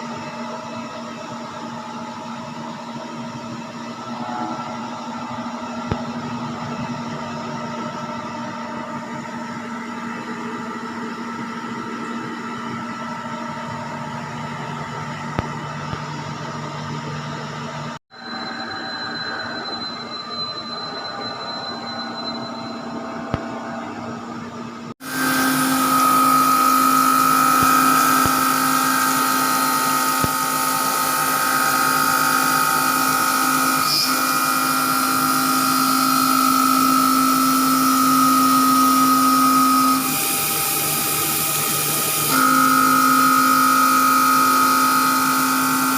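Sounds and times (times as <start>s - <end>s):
low machine hum: 0.0s - 35.8s
high machine whine: 0.0s - 45.9s.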